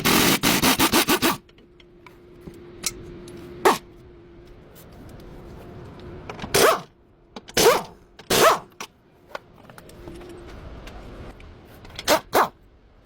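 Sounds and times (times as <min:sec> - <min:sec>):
steady background hum: 0:00.0 - 0:13.0
dog barking: 0:12.1 - 0:12.6.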